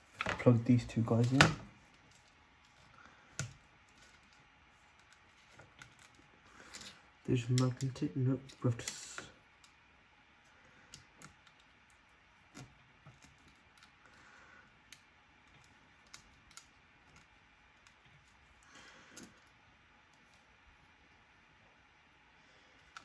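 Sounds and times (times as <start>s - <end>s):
small clicks and taps of tools: 3.4s - 7.0s, 14.9s - 18.3s.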